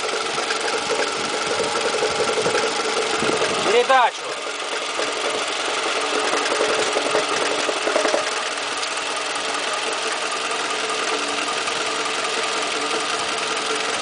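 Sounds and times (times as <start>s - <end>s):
car engine idling: 0.0s - 14.0s
repetitive engine knock: 0.0s - 14.0s.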